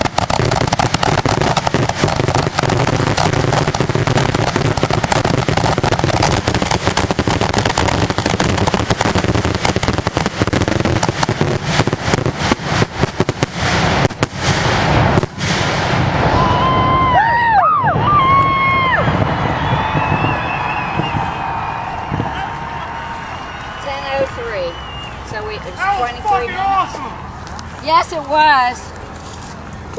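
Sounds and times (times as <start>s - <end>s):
fireworks shell bursts and crackle: 0.0s - 16.0s.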